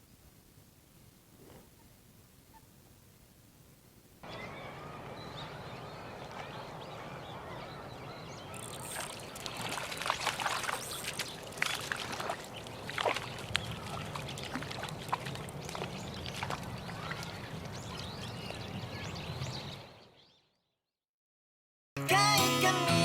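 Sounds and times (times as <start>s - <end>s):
water trickling and splashing: 8.6s - 18.1s.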